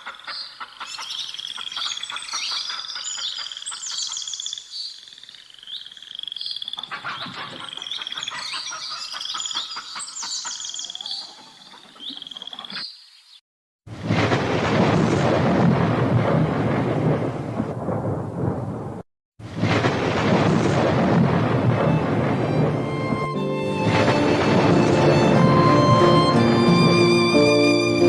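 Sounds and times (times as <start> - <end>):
frogs croaking: 0.0 - 13.3
songbirds trilling: 0.0 - 13.4
thunder rumbling: 13.9 - 27.6
loud steady rain: 19.6 - 26.6.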